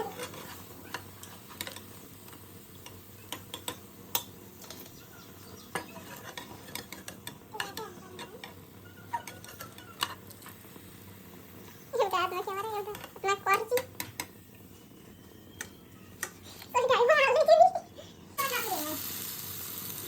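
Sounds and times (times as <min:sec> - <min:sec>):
metal spoon scraping a pan: 0:00.0 - 0:02.0, 0:05.7 - 0:10.6
food sizzling in hot oil: 0:00.0 - 0:20.0.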